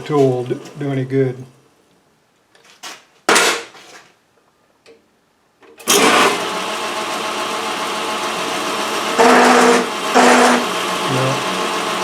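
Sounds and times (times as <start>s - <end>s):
lathe tool chattering: 5.9s - 12.0s.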